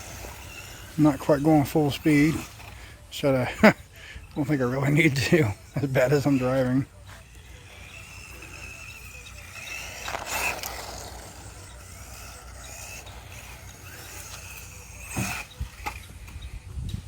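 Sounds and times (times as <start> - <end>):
toy truck electric motor whining: 0.0 - 17.0.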